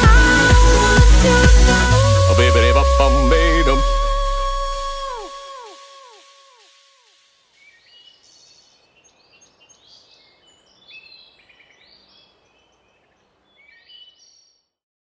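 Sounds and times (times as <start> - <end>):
small birds chirping: 7.4 - 14.7.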